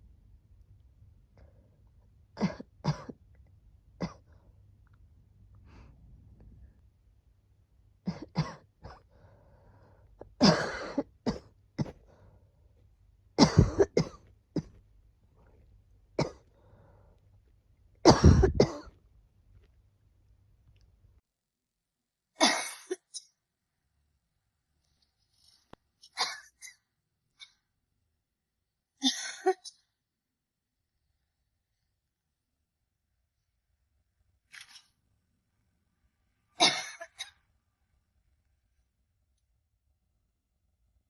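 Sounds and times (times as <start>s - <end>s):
woman coughing: 2.4s - 3.2s, 8.1s - 9.1s, 10.4s - 12.0s, 13.4s - 14.8s, 16.2s - 16.4s, 18.1s - 18.9s, 22.4s - 23.2s, 26.2s - 26.8s, 36.6s - 37.4s.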